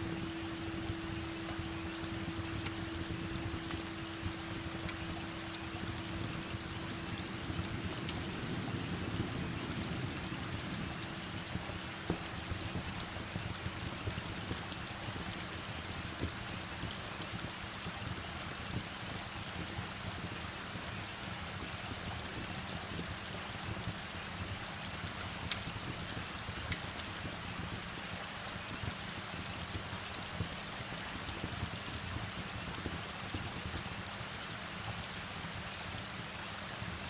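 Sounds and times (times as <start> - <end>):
low held tone: 0.0 - 13.4
wood fire crackling: 0.0 - 20.4
heavy rain: 0.0 - 37.0.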